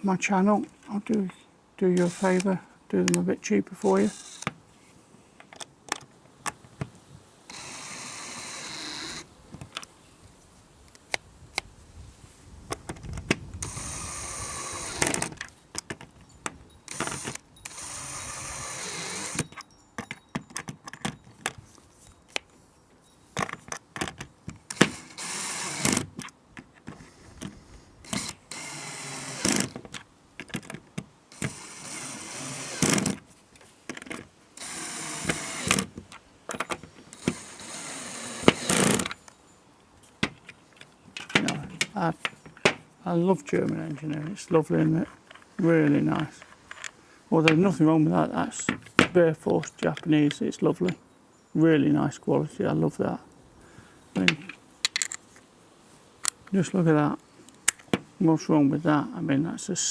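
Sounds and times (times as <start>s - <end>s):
plastic and metal parts clicking: 23.4s - 39.3s, 40.2s - 47.7s, 54.2s - 55.2s
rubbing or scraping: 36.8s - 39.2s.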